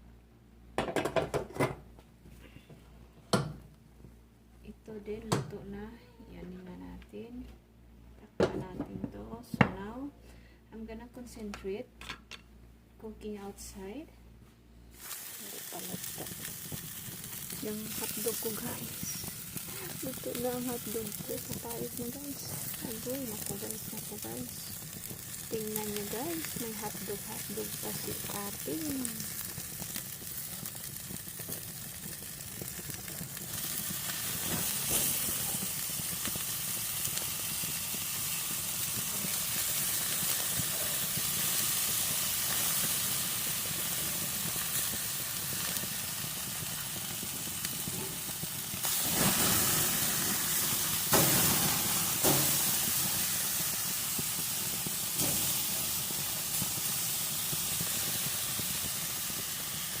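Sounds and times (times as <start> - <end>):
hotdogs sizzling in a pan: 14.9 - 60.0.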